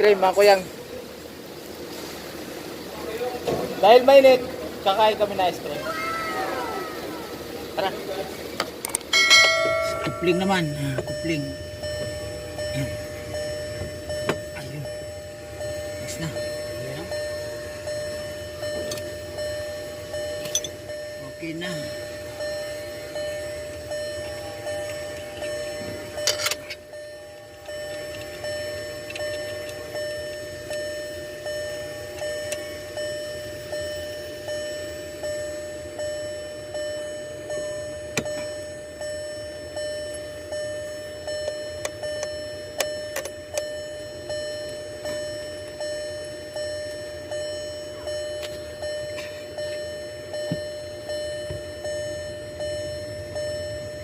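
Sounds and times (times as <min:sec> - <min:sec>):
car warning chime: 0:06.6 - 0:54.0.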